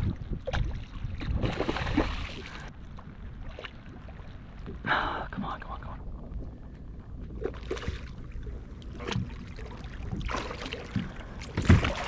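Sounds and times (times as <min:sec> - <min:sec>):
water splashing around kayak: 0:00.0 - 0:05.5, 0:06.2 - 0:12.0
knocks against hull: 0:10.9 - 0:12.0.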